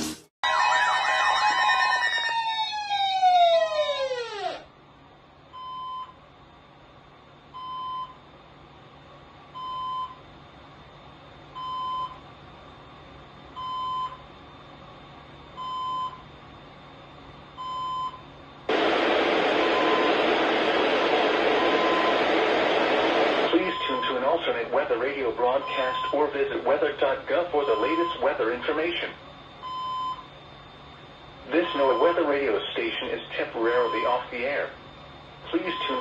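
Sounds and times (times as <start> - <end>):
tone sliding down in pitch: 0.4 - 4.6
loud static hiss: 18.7 - 29.2
short beeps: 23.5 - 24.2, 35.7 - 36.0.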